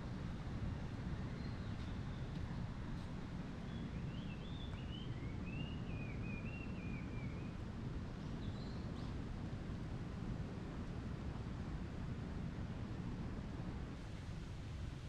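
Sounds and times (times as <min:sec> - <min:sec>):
songbird singing: 0:01.2 - 0:02.4, 0:03.6 - 0:07.6, 0:08.2 - 0:09.2.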